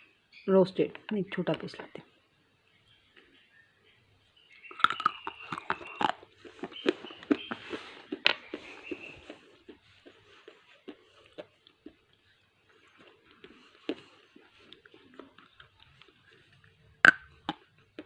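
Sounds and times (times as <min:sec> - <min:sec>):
clay being bitten and chewed: 0:04.6 - 0:18.0.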